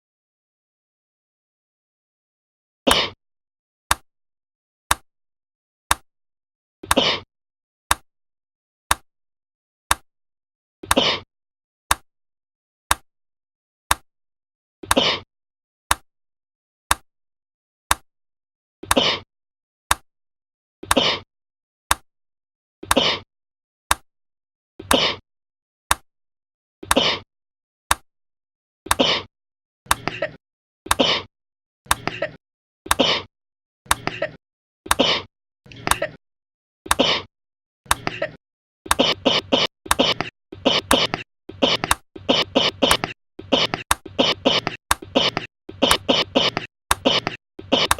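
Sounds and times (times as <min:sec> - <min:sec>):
person coughing: 0:26.9 - 0:27.2, 0:30.0 - 0:31.3, 0:32.0 - 0:33.3, 0:34.0 - 0:36.2, 0:36.9 - 0:37.3, 0:38.0 - 0:47.9.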